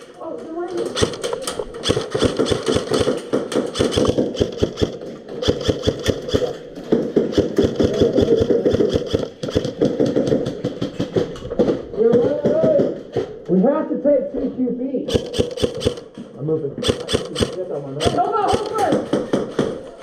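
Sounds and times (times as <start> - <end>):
airsoft rifles full-auto firing: 0.7 - 6.6, 7.3 - 10.4, 15.1 - 16.1, 16.8 - 19.3.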